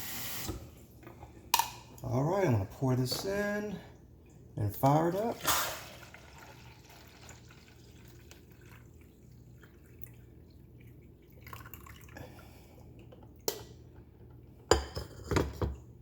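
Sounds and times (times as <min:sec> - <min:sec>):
faint water dripping: 0:03.8 - 0:05.0, 0:06.1 - 0:13.7.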